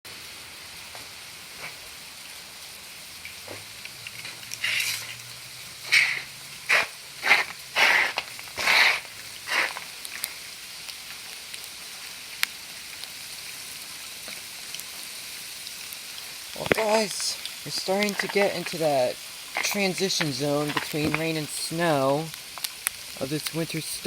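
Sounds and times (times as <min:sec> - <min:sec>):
sleet falling and ticking: 0:16.5 - 0:24.0.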